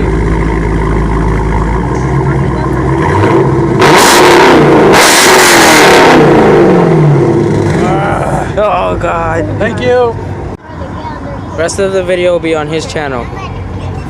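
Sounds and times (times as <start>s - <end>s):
car engine revving hard: 1.6s - 8.4s.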